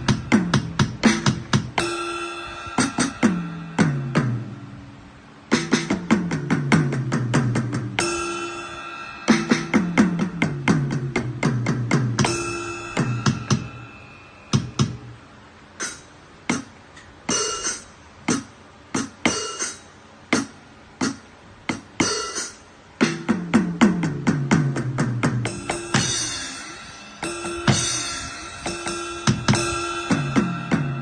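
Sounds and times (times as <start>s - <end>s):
electronic percussion hits: 0.0s - 4.5s, 5.5s - 15.1s, 25.2s - 31.0s
electronic tom runs: 0.0s - 31.0s.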